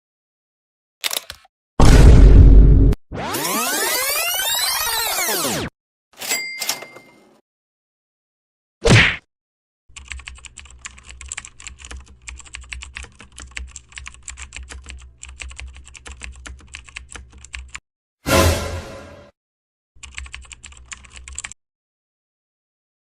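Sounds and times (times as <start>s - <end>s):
keyboard key clicks: 1.0s - 1.5s.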